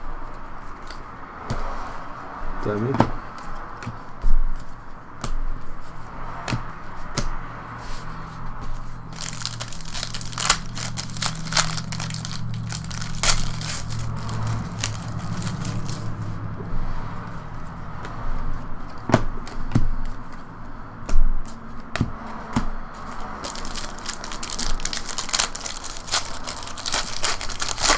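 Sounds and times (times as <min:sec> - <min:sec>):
cards rustling and snapping: 0:02.8 - 0:05.4, 0:06.4 - 0:16.4, 0:18.0 - 0:27.9
wrappers crinkling and tearing: 0:09.1 - 0:16.3, 0:23.0 - 0:27.9.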